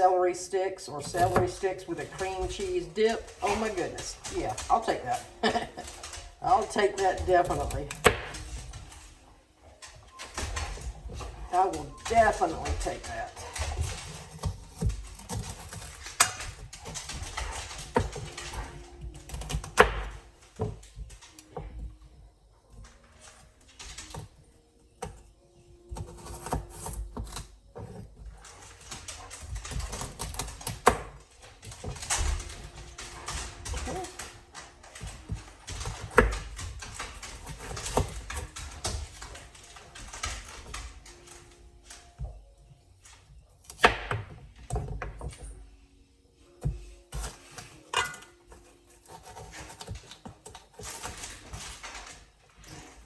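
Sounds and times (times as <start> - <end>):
knife chopping on cutting board: 1.1 - 2.8, 6.5 - 8.5, 17.8 - 20.8, 25.9 - 28.0, 35.8 - 36.5, 46.6 - 51.1.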